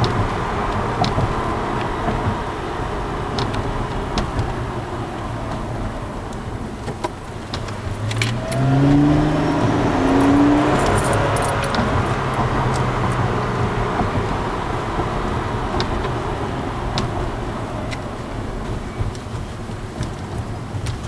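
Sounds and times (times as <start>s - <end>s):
car engine accelerating: 0.0s - 21.0s
road noise: 0.0s - 21.0s
light clicks and jingles: 7.0s - 13.3s.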